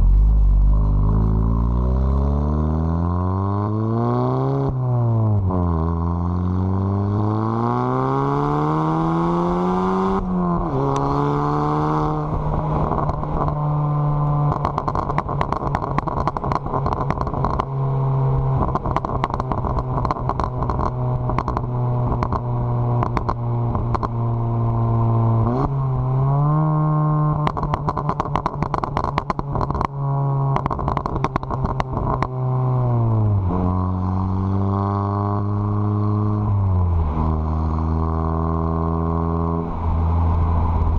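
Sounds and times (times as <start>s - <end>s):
exhaust crackles and pops: 0.0s - 2.0s, 12.0s - 25.8s, 27.1s - 34.4s
car engine revving: 0.0s - 40.9s.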